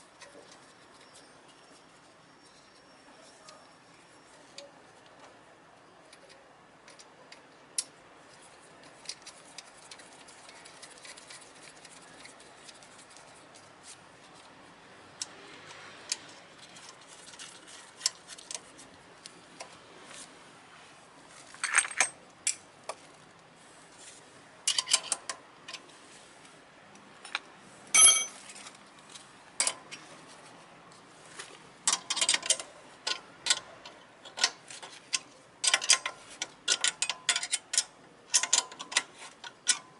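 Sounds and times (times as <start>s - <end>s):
hand tools clinking on metal parts: 28.0s - 28.4s, 31.9s - 39.9s.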